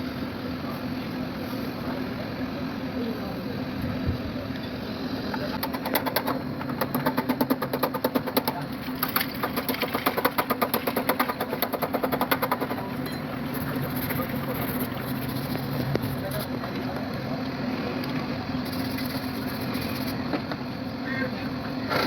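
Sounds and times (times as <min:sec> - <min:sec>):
steady low hum: 0:00.0 - 0:21.9.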